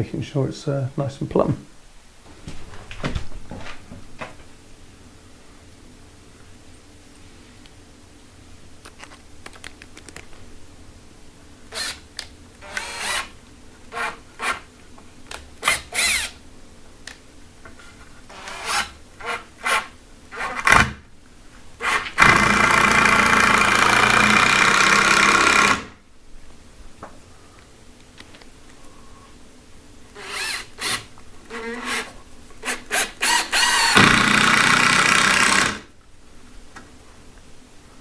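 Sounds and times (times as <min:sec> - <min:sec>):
power drill running: 0:11.7 - 0:14.7, 0:15.3 - 0:16.4, 0:18.3 - 0:20.9, 0:21.8 - 0:25.9, 0:30.2 - 0:35.9.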